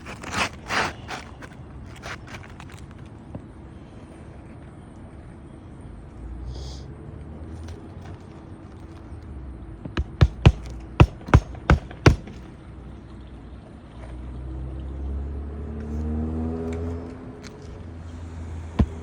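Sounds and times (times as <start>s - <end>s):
hammer striking nails: 9.9s - 12.6s, 18.7s - 19.0s
low engine-like drone: 10.6s - 19.0s.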